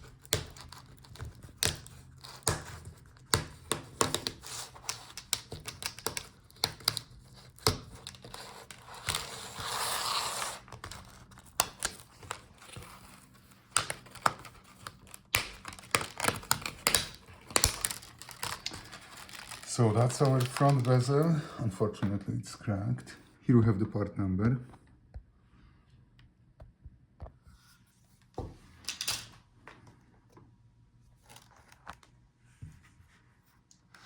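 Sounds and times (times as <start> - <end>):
plastic scraping rustle: 6.8 - 21.4.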